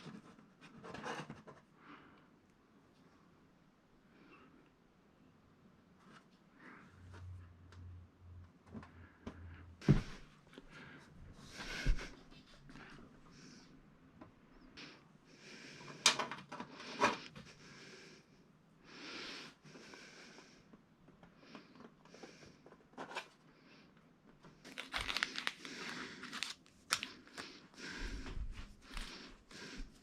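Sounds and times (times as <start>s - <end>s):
crinkling and rustling: 24.2s - 30.0s.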